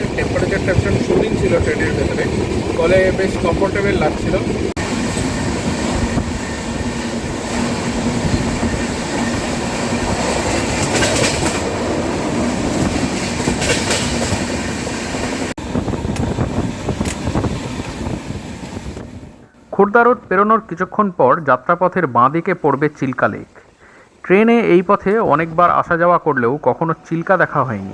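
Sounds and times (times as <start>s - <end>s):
train rumbling on track: 0.0s - 19.5s.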